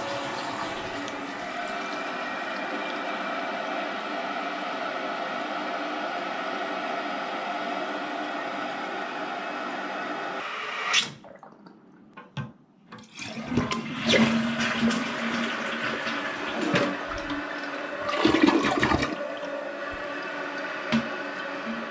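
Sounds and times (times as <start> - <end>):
toilet flushing: 0.0 - 4.2, 13.0 - 21.9.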